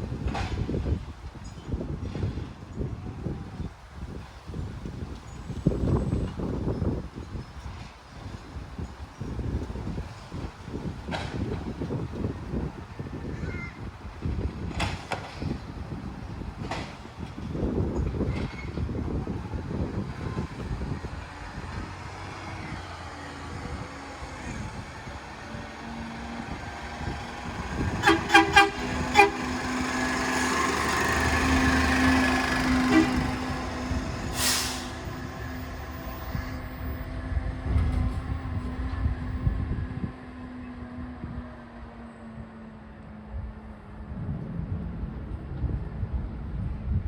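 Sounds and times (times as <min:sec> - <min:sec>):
truck engine rumble: 0:00.0 - 0:47.0
air hiss: 0:34.3 - 0:35.1.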